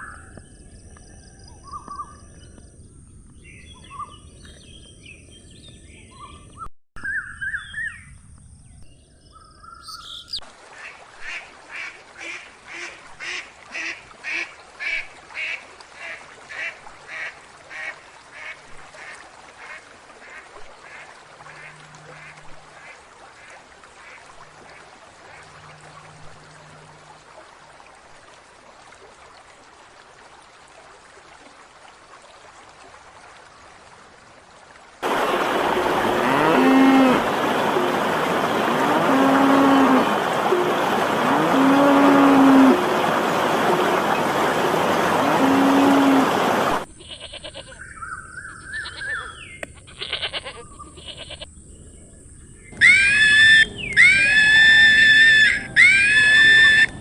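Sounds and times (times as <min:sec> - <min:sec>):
bird chirps: 0:08.8 - 0:10.4.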